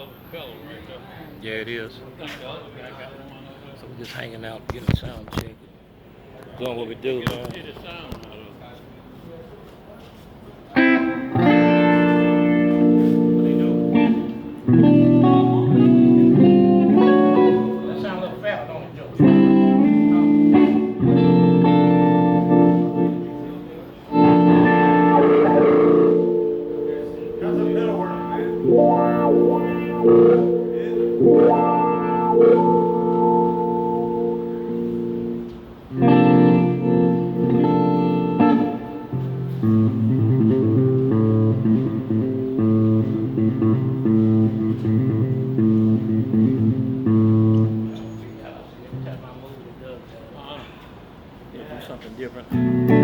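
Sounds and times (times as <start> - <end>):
amplified guitar chords ringing: 10.7 - 48.3, 52.5 - 53.0.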